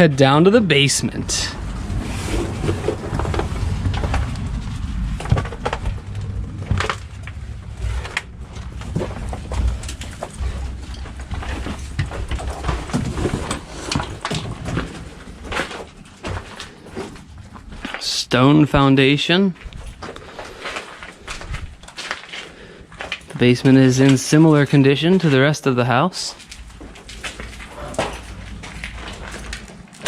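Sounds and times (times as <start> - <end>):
low rumble: 0.1 - 19.0
footsteps going down stairs: 1.6 - 18.1, 19.6 - 25.4, 26.2 - 30.0.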